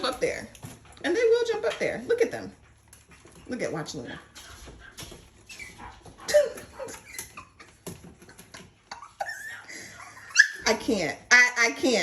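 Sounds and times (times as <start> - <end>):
puppy claws scrabbling and tapping: 0.0 - 11.2
puppy squeaks and whines: 5.4 - 7.6, 10.2 - 10.7.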